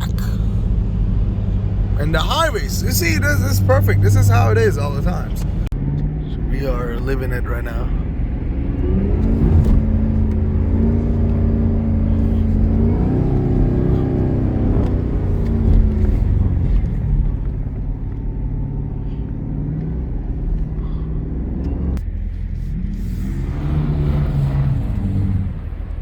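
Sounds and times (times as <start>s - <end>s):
car engine on the road: 0.0s - 26.0s.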